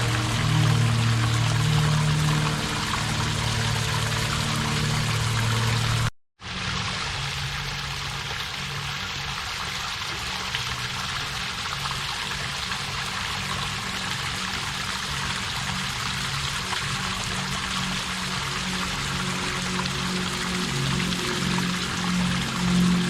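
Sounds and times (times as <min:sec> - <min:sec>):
waterfall rushing: 0:00.0 - 0:06.1, 0:16.6 - 0:23.0.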